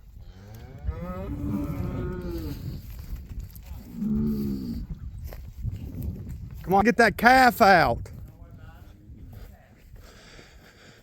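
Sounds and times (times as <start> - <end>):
cow mooing: 0.4 - 2.6, 3.9 - 4.8.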